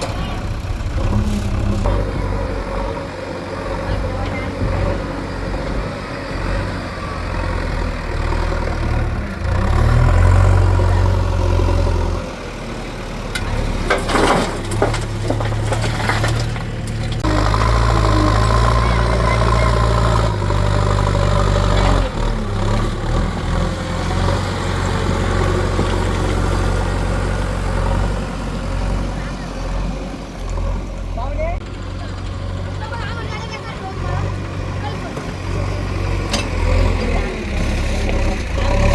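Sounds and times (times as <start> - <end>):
heavy diesel engine running: 0.0 - 38.9
knocks and clatter: 13.3 - 17.9.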